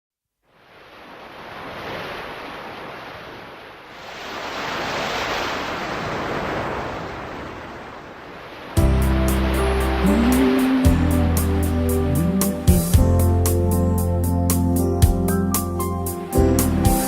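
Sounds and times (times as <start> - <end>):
sea surf washing in: 0.5 - 13.6.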